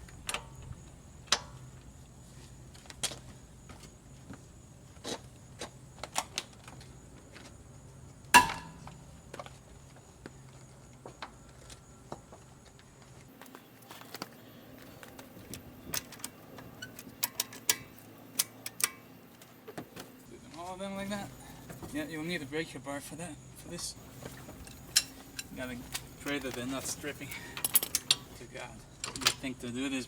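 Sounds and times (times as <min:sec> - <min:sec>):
metal tools clanking on lug nuts: 0:08.4 - 0:09.0, 0:13.6 - 0:20.2, 0:21.0 - 0:22.5, 0:23.8 - 0:28.4.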